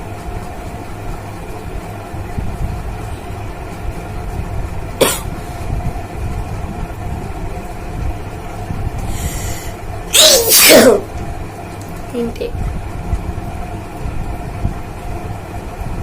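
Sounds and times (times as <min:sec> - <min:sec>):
woman sneezing loudly: 0:10.1 - 0:11.0.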